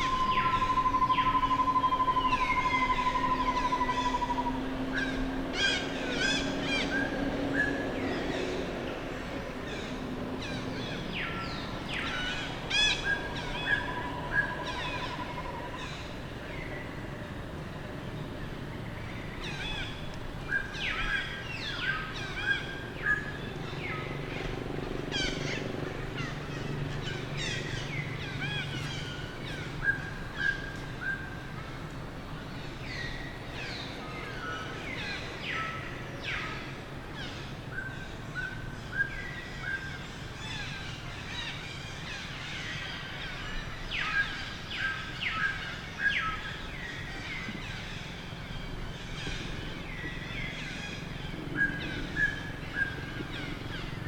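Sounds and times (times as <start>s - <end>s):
high-pitched chirping calls: 0.0s - 4.7s
steady low hum: 0.0s - 54.0s.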